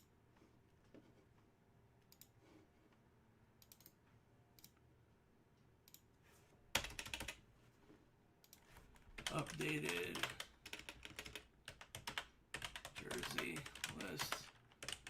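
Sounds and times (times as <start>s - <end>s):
computer keyboard typing: 6.8s - 7.4s, 9.2s - 15.0s.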